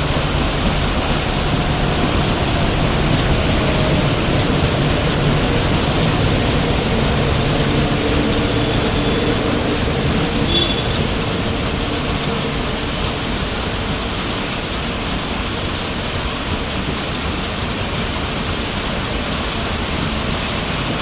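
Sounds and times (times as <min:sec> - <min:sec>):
diesel locomotive engine drone: 0:00.0 - 0:21.0
heavy rain hiss: 0:00.0 - 0:21.0.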